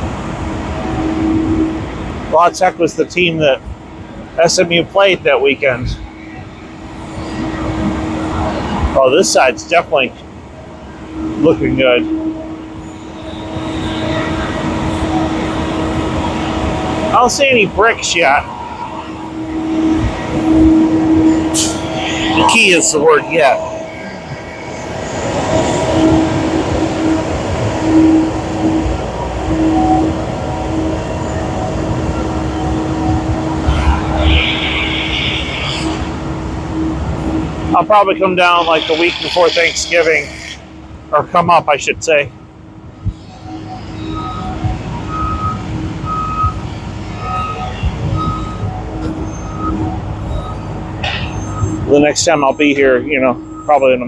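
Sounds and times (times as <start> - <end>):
engine droning: 0.0 - 54.0
reversing alarm beeping: 10.8 - 41.6, 42.3 - 54.0.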